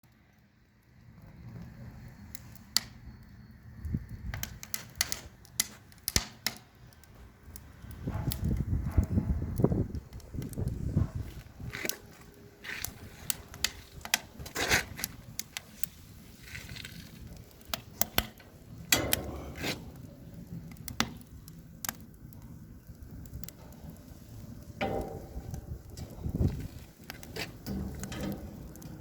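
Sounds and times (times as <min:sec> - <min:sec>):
wood fire crackling and popping: 0:00.0 - 0:29.0
low rumbling noise: 0:18.6 - 0:29.0.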